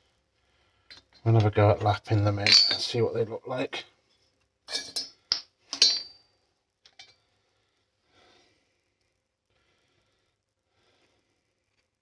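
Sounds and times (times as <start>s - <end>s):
metal tools clinking: 2.4s - 3.0s, 4.7s - 6.2s.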